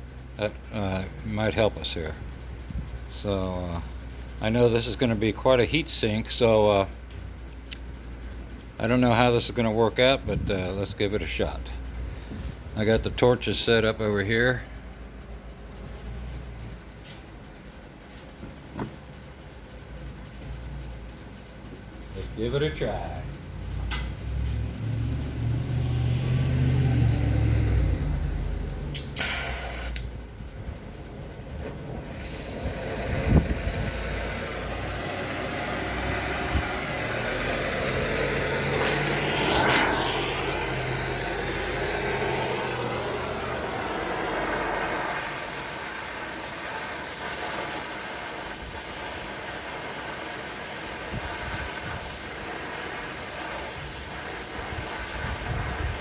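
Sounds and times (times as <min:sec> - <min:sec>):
gas torch flame hissing: 0:25.2 - 0:30.2, 0:31.8 - 0:56.0.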